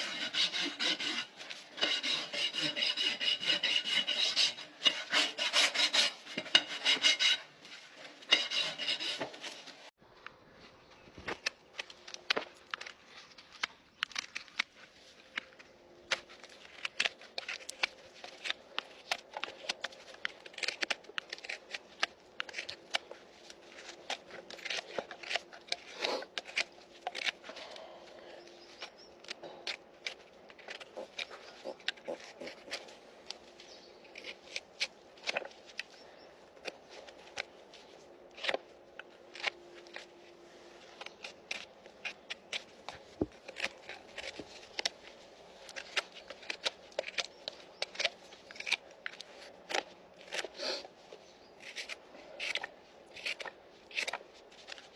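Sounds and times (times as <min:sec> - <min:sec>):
hand tools scraping hoof: 0:00.0 - 0:09.9.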